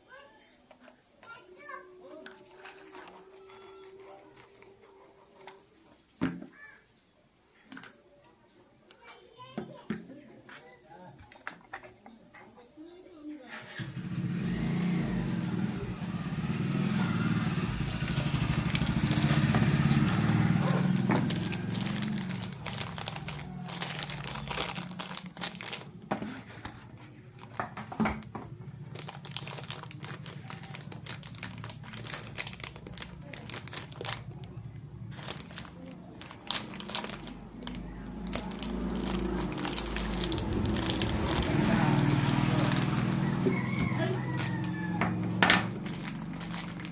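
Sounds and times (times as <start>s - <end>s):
packaging crinkling and rustling: 2.0s - 4.8s, 17.4s - 46.9s
vehicle engine running: 13.8s - 46.9s.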